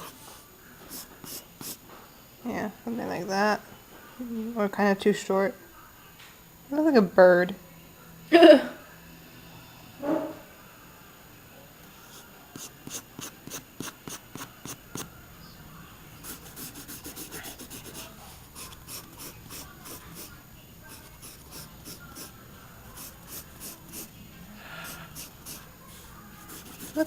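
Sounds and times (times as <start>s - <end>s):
pencil strokes scratching paper: 0.8s - 1.8s, 12.0s - 15.1s, 16.2s - 27.0s.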